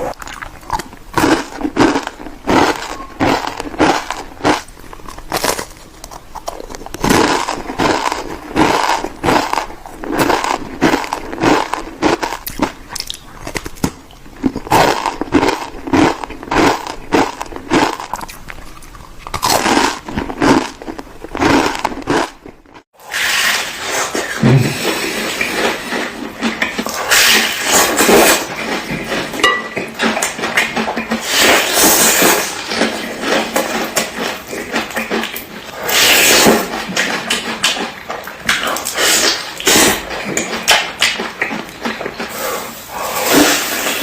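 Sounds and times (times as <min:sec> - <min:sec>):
crunchy food being chewed: 0:00.0 - 0:22.9, 0:23.8 - 0:44.0.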